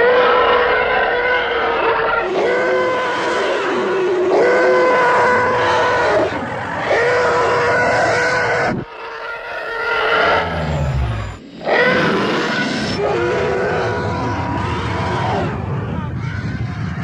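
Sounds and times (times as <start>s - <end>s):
screaming whining aircraft: 0.0s - 17.0s.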